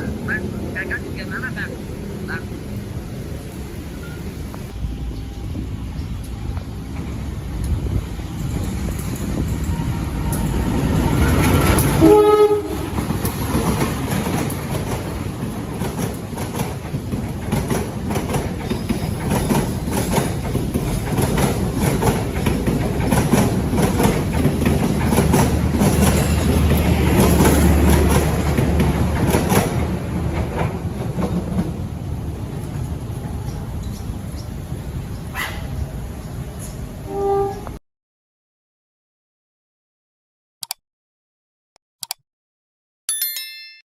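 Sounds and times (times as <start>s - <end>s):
train horn: 9.7s - 13.0s, 37.0s - 37.8s
train wheels clacking over rail joints: 12.8s - 31.8s.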